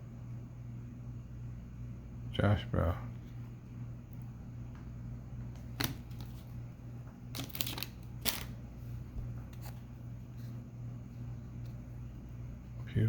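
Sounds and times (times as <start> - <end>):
steady low hum: 0.0 - 13.0
trading cards flipped: 5.6 - 6.5, 7.3 - 8.6.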